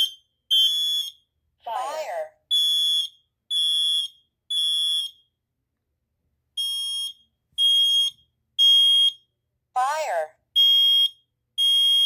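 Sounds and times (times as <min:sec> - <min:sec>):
smoke alarm beeps: 0:00.0 - 0:01.3, 0:02.5 - 0:05.3, 0:06.6 - 0:09.3, 0:10.6 - 0:12.0.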